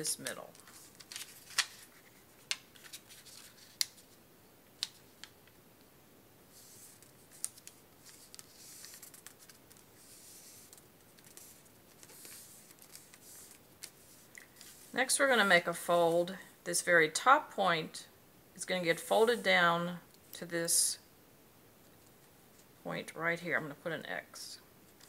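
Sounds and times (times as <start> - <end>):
paper crackles and taps: 0.5 - 4.0, 6.9 - 14.8
paper sliding rustles: 0.5 - 4.2, 6.5 - 15.0.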